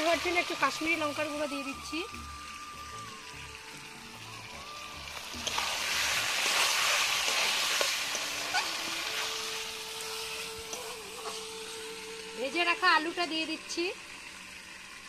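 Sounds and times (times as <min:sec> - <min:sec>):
chicken sizzling in hot oil: 0:00.0 - 0:15.0
spoon scraping a pan: 0:06.4 - 0:09.4.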